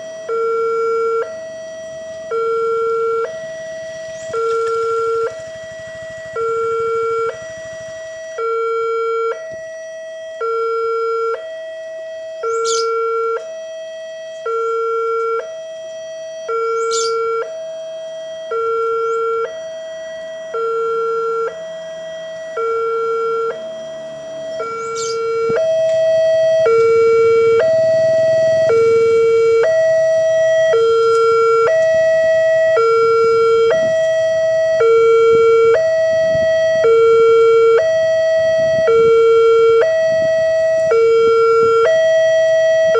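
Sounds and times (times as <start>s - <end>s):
level crossing two-tone alarm: 0.0s - 42.9s
train rumble: 2.9s - 8.2s.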